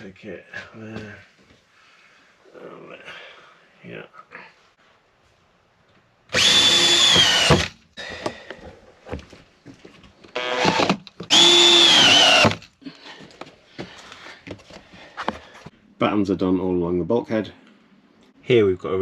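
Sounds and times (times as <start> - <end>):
power drill driving screws: 6.3 - 7.8, 10.4 - 12.6.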